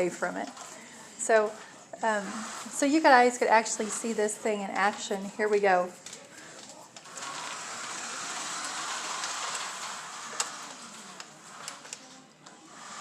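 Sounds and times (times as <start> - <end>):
remote-control car motor whirring: 7.0 - 13.0.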